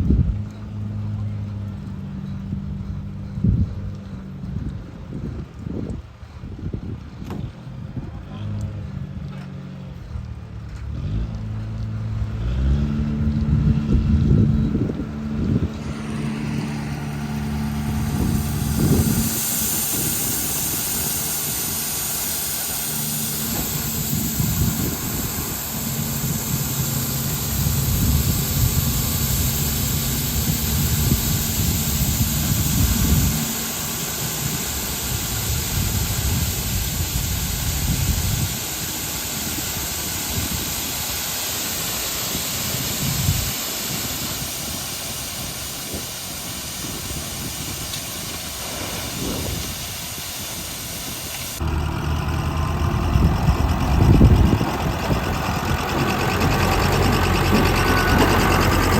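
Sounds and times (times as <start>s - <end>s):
machine engine humming: 8.3s - 58.9s
steady loud hiss: 13.4s - 58.9s.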